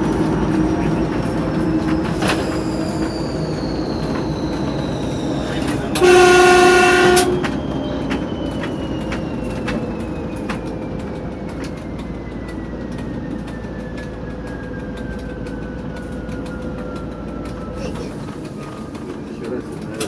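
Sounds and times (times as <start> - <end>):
diesel engine running: 0.0 - 20.0
wheels clicking over rail joints: 0.0 - 20.0
turbocharger whistle: 1.8 - 10.8
locomotive horn blast: 5.8 - 7.6.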